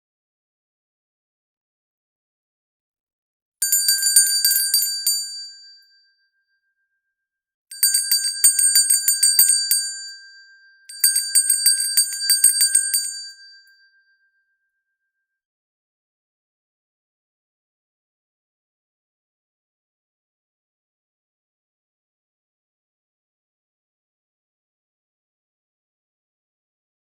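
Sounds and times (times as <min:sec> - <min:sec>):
hand bell ringing: 0:03.6 - 0:05.5, 0:07.7 - 0:10.3, 0:10.9 - 0:13.6.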